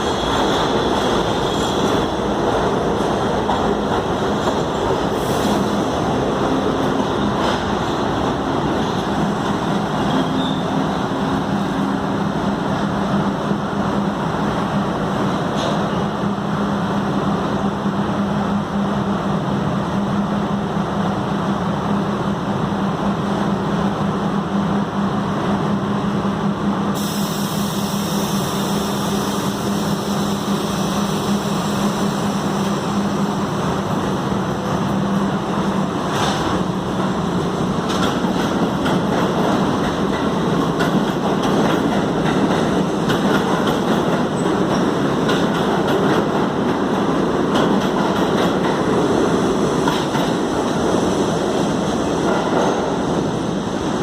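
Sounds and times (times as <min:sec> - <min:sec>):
subway train low hum: 0:00.0 - 0:54.0
hiss: 0:05.0 - 0:06.0, 0:26.9 - 0:33.5
train wheels clicking over rail joints: 0:29.0 - 0:53.1.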